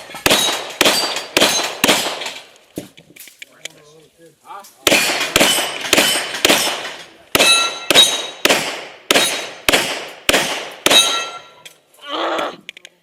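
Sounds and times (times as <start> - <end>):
pistol shots: 0.0 - 2.5, 4.8 - 11.5
steel plates clanging: 10.9 - 11.7.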